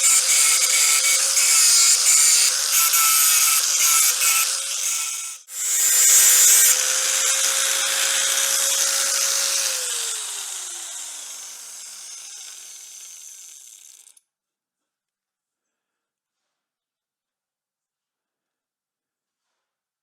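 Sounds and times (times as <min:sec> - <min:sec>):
angle grinder whining: 0:00.0 - 0:14.2.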